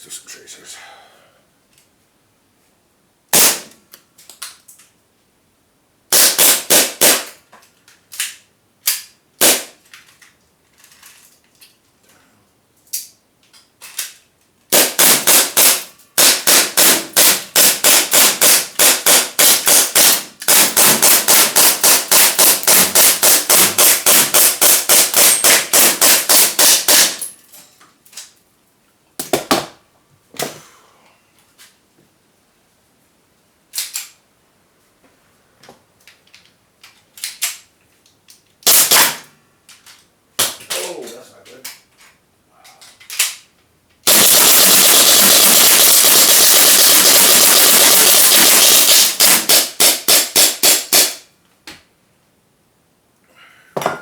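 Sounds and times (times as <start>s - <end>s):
airsoft gun firing: 3.3s - 3.7s, 6.1s - 7.4s, 9.4s - 9.7s, 14.7s - 27.2s, 38.7s - 39.2s, 44.0s - 51.2s.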